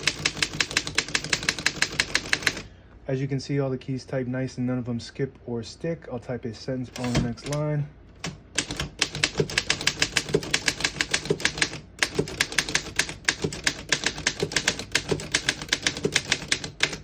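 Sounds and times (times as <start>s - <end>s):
manual typewriter typing: 0.0s - 2.6s, 7.0s - 17.0s.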